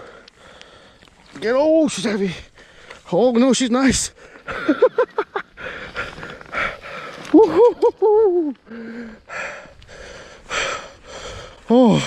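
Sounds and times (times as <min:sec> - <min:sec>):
man breathing hard: 0:00.0 - 0:01.1, 0:02.4 - 0:03.0, 0:05.5 - 0:07.3, 0:08.6 - 0:12.0
man humming: 0:11.7 - 0:12.0.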